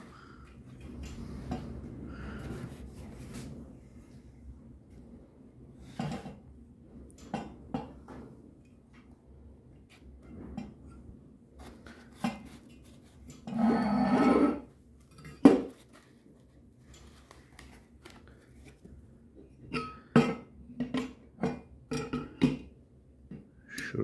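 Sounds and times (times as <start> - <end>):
metal fan rattling scrape: 0.0 - 4.6, 9.9 - 17.4.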